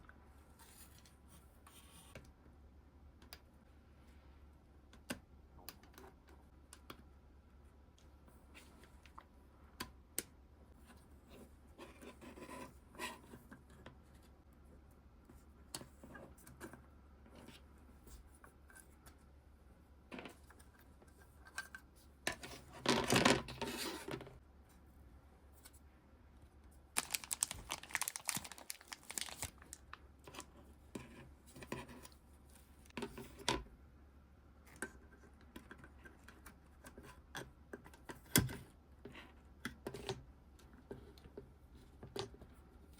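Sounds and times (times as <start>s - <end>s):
tape tearing: 27.0s - 29.8s.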